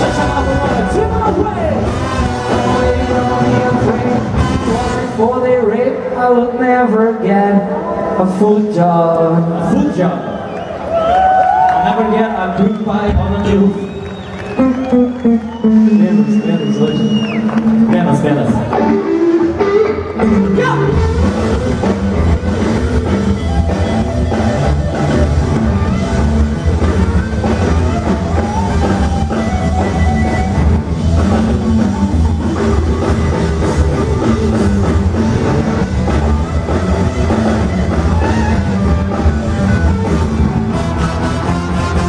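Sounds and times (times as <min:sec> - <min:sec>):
person singing: 0:00.0 - 0:05.2
rock band playing: 0:00.0 - 0:07.0, 0:10.7 - 0:42.0.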